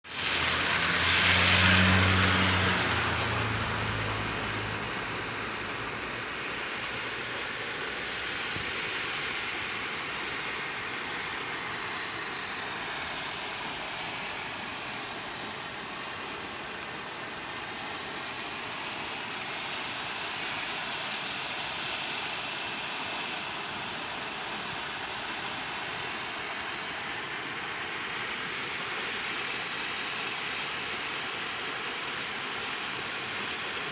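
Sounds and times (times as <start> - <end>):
water rushing into a river: 0.1 - 33.9
motor vehicle passing: 0.2 - 6.4.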